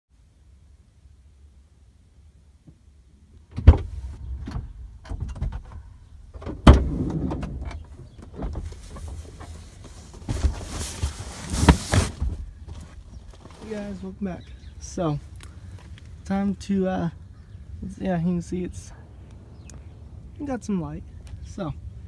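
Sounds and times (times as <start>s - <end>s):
knocks and clunks: 3.5s - 13.5s
rustling: 6.8s - 14.2s.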